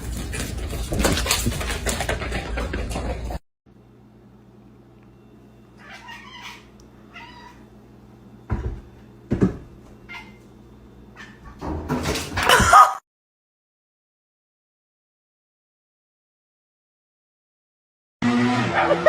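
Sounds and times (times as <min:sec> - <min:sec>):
cat meowing: 0:05.8 - 0:07.6.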